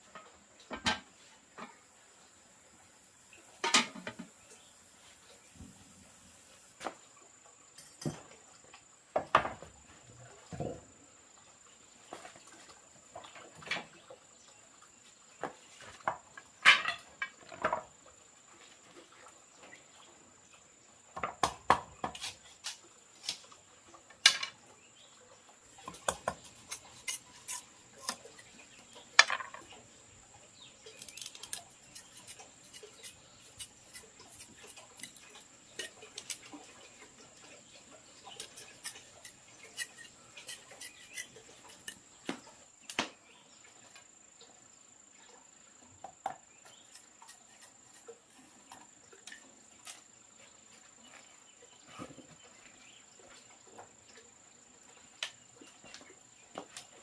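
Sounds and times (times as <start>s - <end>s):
objects being handled: 25.8s - 29.8s, 30.9s - 36.8s, 38.2s - 42.5s.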